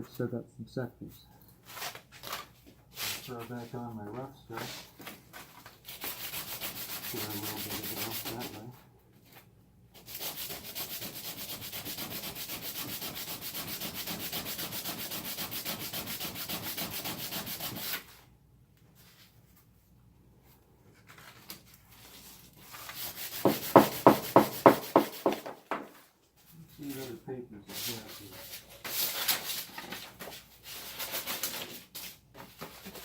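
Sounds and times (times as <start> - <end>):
sandpaper rubbing on metal: 5.9 - 8.7, 10.0 - 18.1, 22.8 - 25.4.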